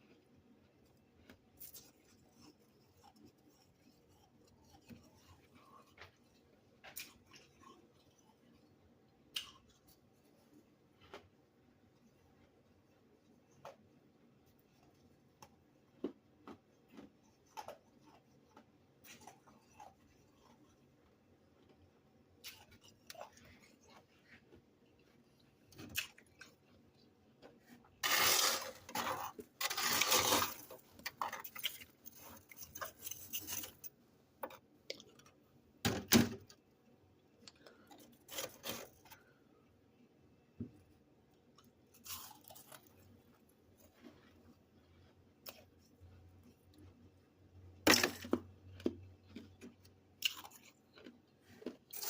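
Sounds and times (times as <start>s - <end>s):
freezer frost crunching: 21.5s - 33.9s, 37.5s - 39.4s, 41.5s - 46.9s, 47.8s - 52.0s.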